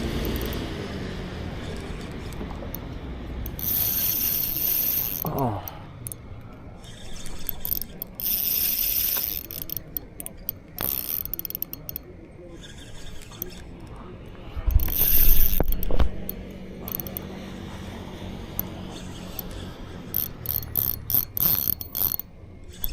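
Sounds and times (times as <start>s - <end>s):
bump and rumble: 0.0s - 8.2s
fishing reel clicking and whirring: 0.0s - 22.9s.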